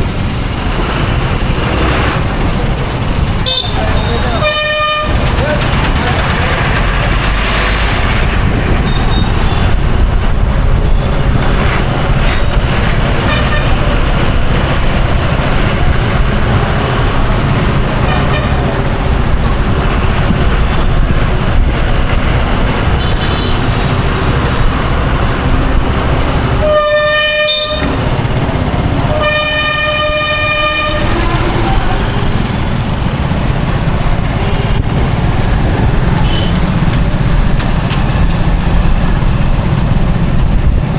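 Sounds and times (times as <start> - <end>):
road traffic rumble: 0.0 - 40.9
distant horn toots: 3.4 - 5.2, 8.8 - 9.8, 13.2 - 14.0, 18.0 - 18.7, 22.9 - 24.0, 26.6 - 28.0, 29.0 - 32.1, 36.2 - 36.7
nearby vehicle horn: 26.6 - 27.9, 36.2 - 36.6.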